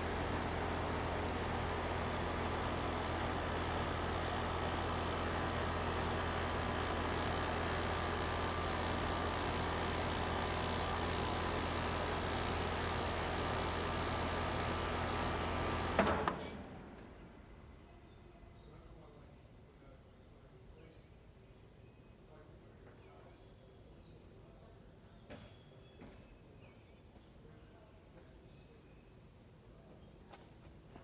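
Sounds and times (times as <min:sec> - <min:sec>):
heat pump humming: 0:00.0 - 0:17.6.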